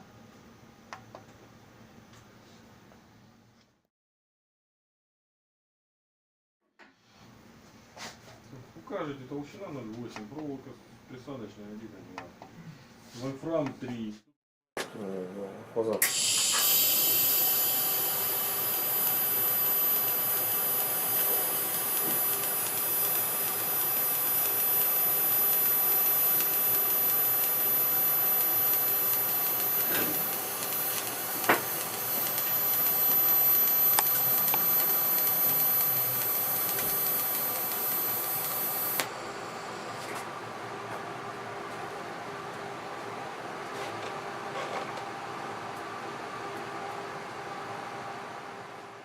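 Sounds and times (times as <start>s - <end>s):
welding arc hissing: 16.0s - 39.5s.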